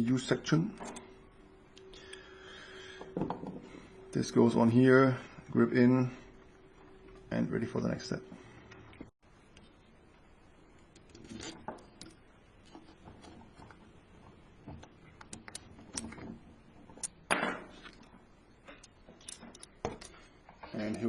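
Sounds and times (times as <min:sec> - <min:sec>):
small parts clicking and clattering: 0:17.8 - 0:21.0.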